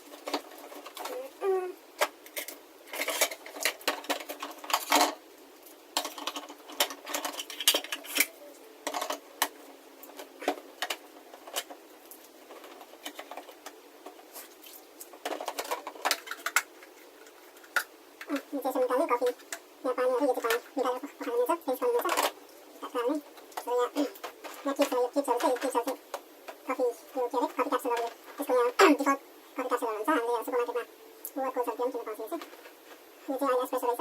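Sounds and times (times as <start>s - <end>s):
plastic parts clicking: 2.0s - 5.2s, 6.0s - 14.2s, 15.0s - 18.4s
packaging rustling: 2.0s - 18.4s.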